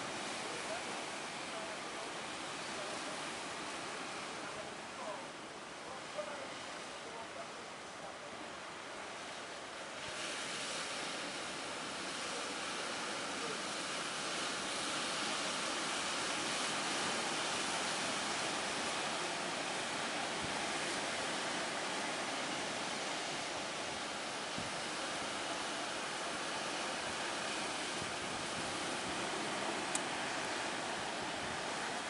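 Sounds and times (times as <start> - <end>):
sea waves: 0.0 - 32.0
strong wind: 18.9 - 32.0.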